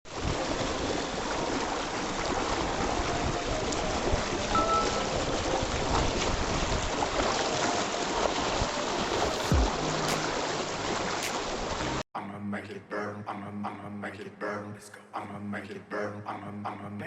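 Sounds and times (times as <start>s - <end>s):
stream rushing over rocks: 0.1s - 12.0s.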